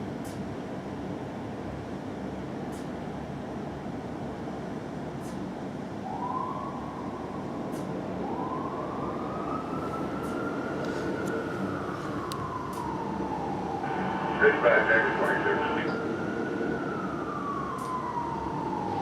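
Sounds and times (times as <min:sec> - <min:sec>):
engine and traffic rumble: 0:00.0 - 0:19.0
fire engine siren wailing: 0:05.9 - 0:19.0.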